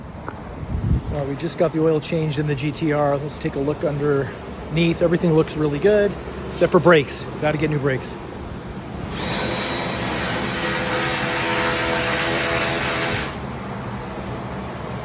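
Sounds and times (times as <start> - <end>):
machine hissing and whining: 9.1 - 15.0.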